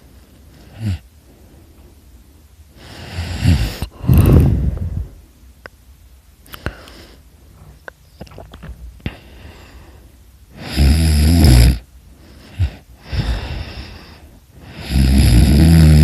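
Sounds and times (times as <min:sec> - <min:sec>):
person snoring: 0:00.6 - 0:01.0, 0:02.8 - 0:05.1, 0:10.5 - 0:11.8, 0:12.4 - 0:16.0
short snort: 0:02.9 - 0:04.6.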